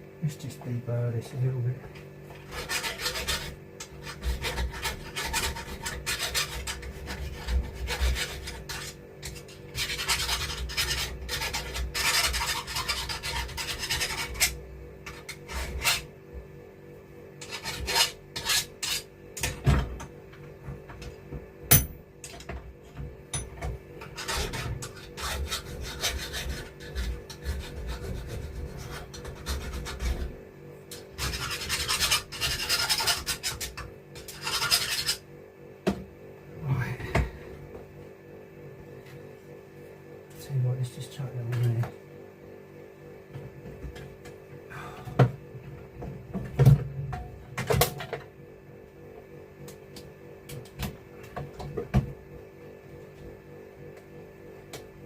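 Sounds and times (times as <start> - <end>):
steady low hum: 0.0 - 55.0
file scraping metal: 2.3 - 16.1, 17.4 - 19.1, 23.4 - 35.3.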